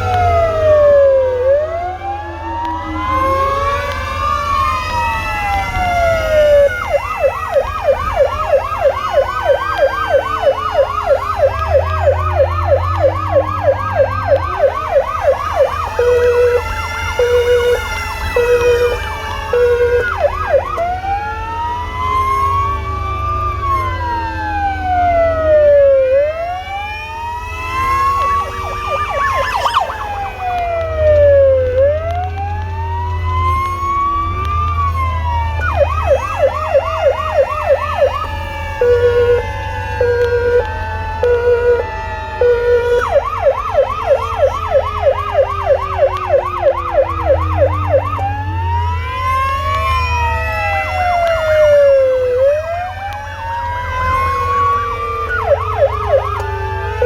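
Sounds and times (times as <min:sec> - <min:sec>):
engine and road rumble: 0:00.0 - 0:57.0
siren fast yelp: 0:00.0 - 0:57.0
sirens wailing: 0:00.0 - 0:57.0
horn blasts: 0:03.1 - 0:21.0, 0:34.9 - 0:48.3.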